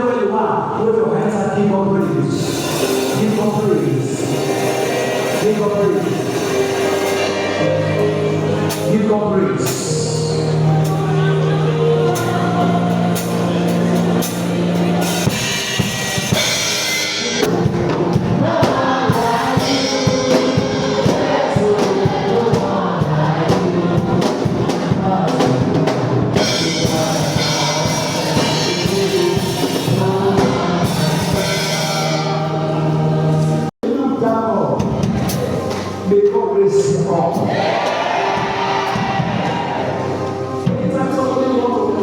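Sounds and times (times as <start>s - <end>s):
choir singing gospel: 2.2s - 33.7s, 34.6s - 42.0s
drum kit beat: 2.4s - 9.0s, 12.1s - 32.7s, 37.3s - 41.0s.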